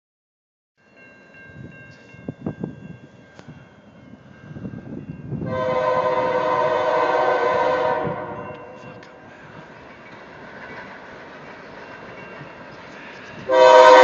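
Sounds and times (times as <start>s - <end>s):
freight train rumble: 0.8s - 14.0s
locomotive air horn: 5.4s - 8.8s, 13.5s - 14.0s
faint train horn tones: 5.4s - 9.8s, 12.7s - 14.0s.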